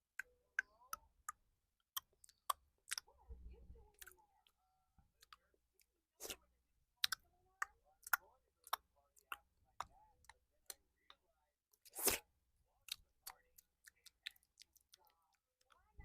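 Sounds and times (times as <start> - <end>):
wet mouth clicks and smacks: 1.3 - 3.1, 7.0 - 7.2.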